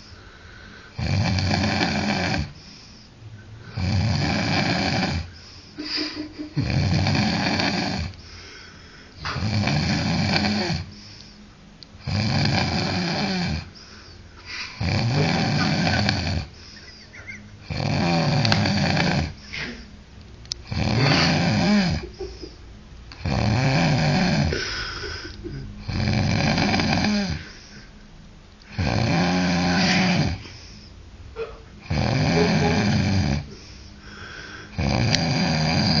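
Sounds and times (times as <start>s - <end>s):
quiet breathing: 0.0s - 36.0s
rasping snores: 0.9s - 2.9s, 3.7s - 5.4s, 6.6s - 8.2s, 9.2s - 10.9s, 12.0s - 13.8s, 14.8s - 16.6s, 17.6s - 19.8s, 20.6s - 22.0s, 23.2s - 27.6s, 28.7s - 30.7s, 31.8s - 33.7s, 34.4s - 36.0s.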